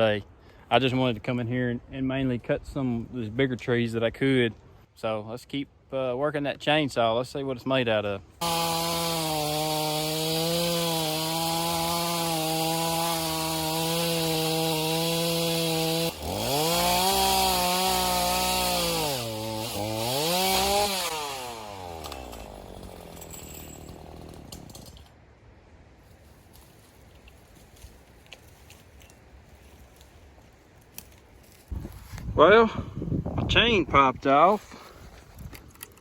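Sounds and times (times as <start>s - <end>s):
chainsaw cutting wood: 8.4s - 25.1s.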